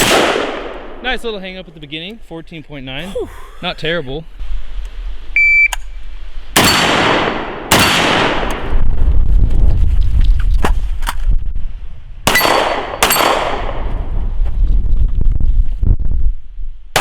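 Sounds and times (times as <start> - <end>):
gunshots echoing: 0.0 - 1.2, 6.6 - 8.7, 12.3 - 13.8
wind rumble on microphone: 4.3 - 17.0.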